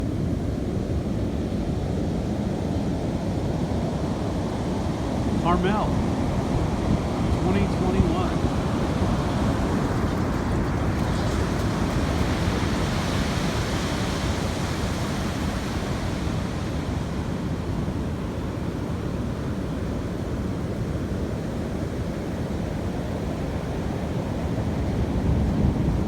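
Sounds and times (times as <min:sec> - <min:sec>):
ocean waves breaking on shore: 0:00.2 - 0:26.0.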